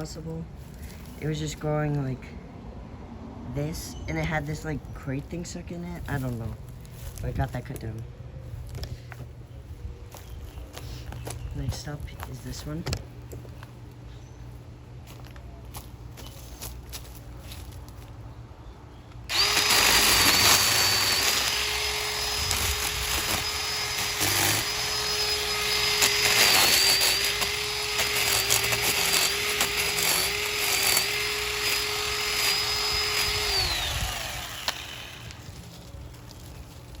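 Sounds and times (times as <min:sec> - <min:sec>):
battery chainsaw cutting wood: 0:19.3 - 0:35.6.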